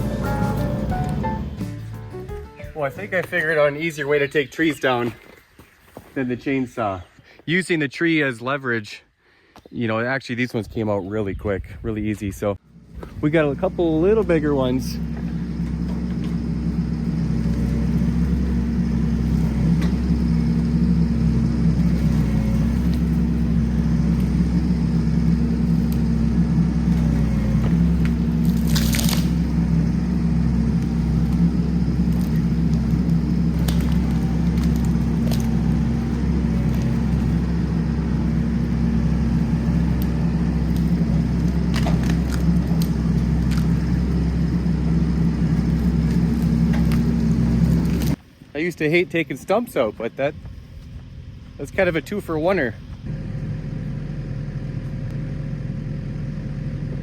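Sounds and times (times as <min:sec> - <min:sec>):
diesel engine running under load: 0:00.0 - 0:03.6, 0:12.6 - 0:57.0
sharp cracks: 0:15.2 - 0:44.4.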